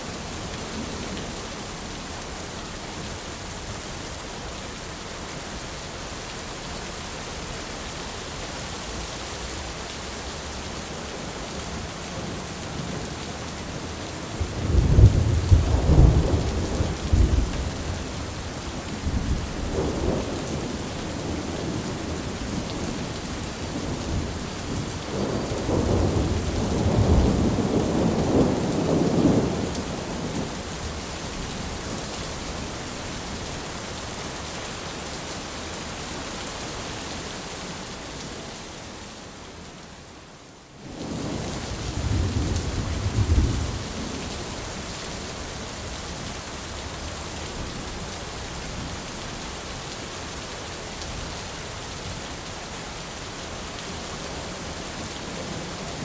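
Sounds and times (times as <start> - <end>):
steady rain: 0.0 - 56.0
thunder rumbling: 14.4 - 31.8, 41.0 - 44.3.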